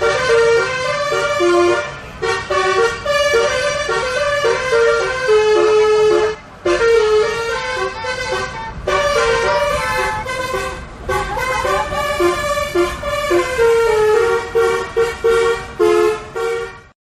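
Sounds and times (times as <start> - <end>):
multi-tone bus air horn tune: 0.0 - 17.0.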